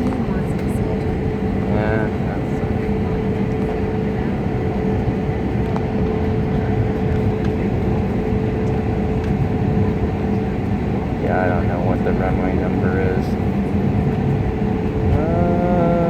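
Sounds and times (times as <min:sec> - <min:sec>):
airliner engine rumble in cabin: 0:00.0 - 0:16.0.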